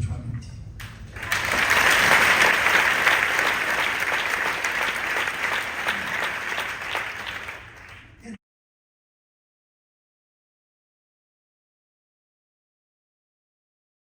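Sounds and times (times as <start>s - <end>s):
audience applauding: 0.8s - 8.2s.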